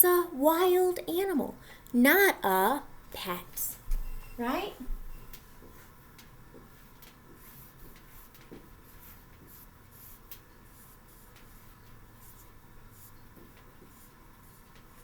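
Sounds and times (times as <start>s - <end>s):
pen scratching on a board: 7.3s - 15.0s.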